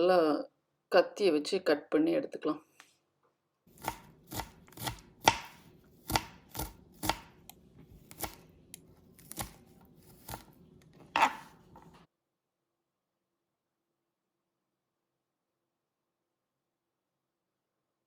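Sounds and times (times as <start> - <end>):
knife chopping leaves: 3.7 - 8.5, 9.1 - 10.6.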